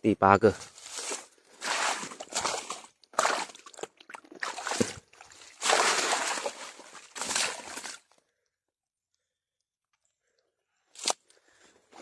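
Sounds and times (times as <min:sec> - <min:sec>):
water sloshing and splashing: 0:00.6 - 0:08.2.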